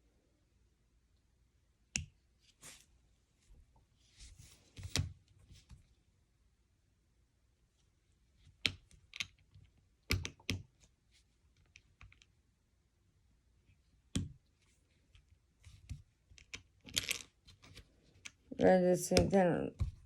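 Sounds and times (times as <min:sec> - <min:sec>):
plastic bricks clicking together: 0:16.4 - 0:17.3.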